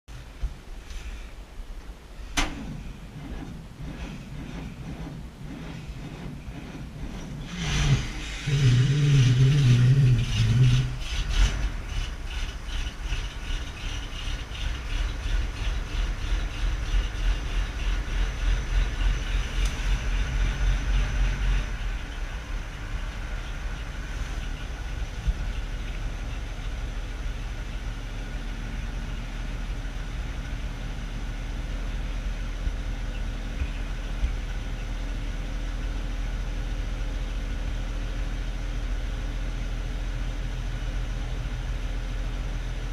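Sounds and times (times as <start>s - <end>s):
engine idling: 0.0s - 42.9s
rhythmic pulsing engine sound: 2.4s - 39.7s
wavering low groan: 7.4s - 11.9s.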